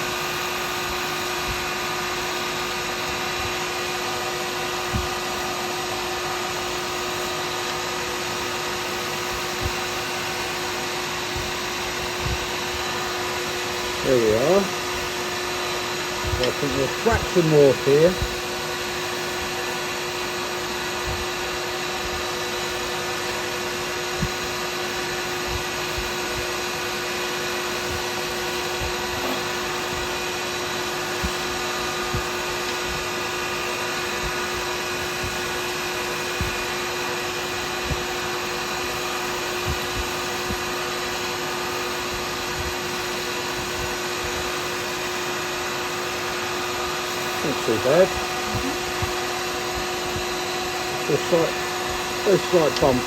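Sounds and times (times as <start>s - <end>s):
cutter hissing on wood: 0.0s - 53.0s
wood lathe motor hum: 10.3s - 21.0s, 45.3s - 53.0s.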